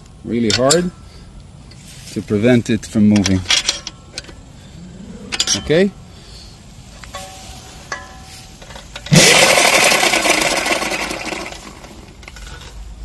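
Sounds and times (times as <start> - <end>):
motor and chain drive whirring: 9.0 - 12.1.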